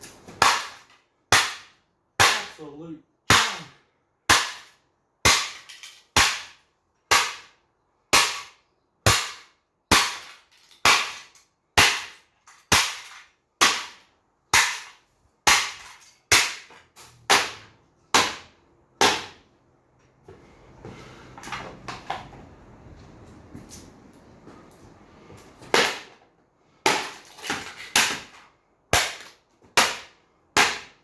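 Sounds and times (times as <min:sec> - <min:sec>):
desk fan being smashed: 0:00.0 - 0:02.6, 0:04.3 - 0:19.4, 0:25.6 - 0:31.0.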